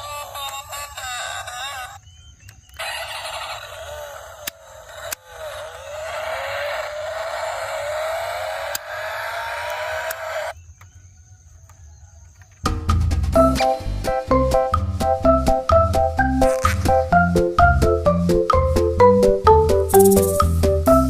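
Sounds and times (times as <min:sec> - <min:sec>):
motor whirring: 0:04.4 - 0:10.6
sharp clicks: 0:08.7 - 0:09.0, 0:09.6 - 0:10.3.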